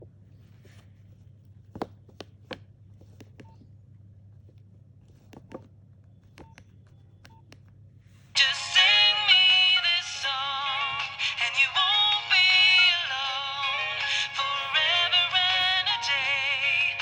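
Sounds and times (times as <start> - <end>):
faint low hum: 0.0 - 17.0
keypad beep: 6.3 - 7.6
phone button clicks: 6.3 - 7.7.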